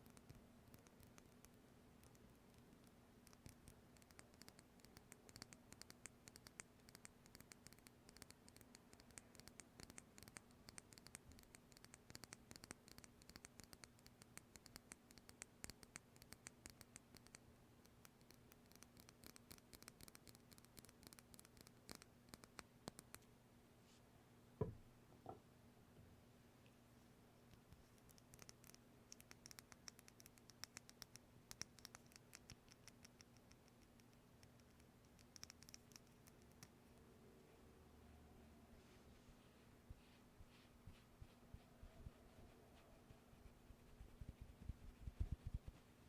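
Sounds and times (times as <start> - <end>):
faint rapid scratching: 0.0 - 24.1, 27.0 - 36.8, 38.8 - 46.0
soft knocks: 24.6 - 25.4.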